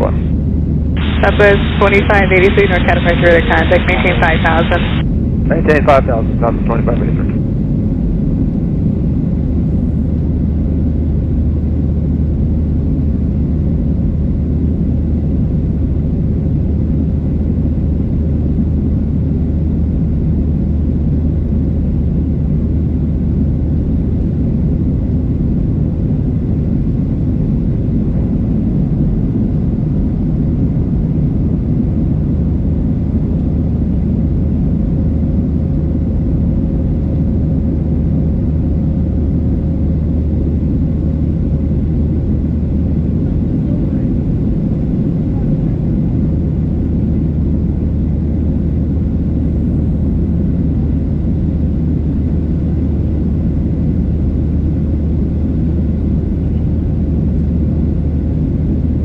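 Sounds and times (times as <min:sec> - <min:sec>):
faint steady hum: 0:00.0 - 0:59.0
jet engines and airflow rumbling: 0:00.0 - 0:59.0.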